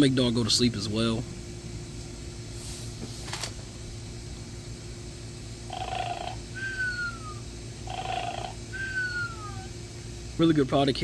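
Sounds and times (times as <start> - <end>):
falling whistle: 6.6 - 7.4, 8.7 - 9.7.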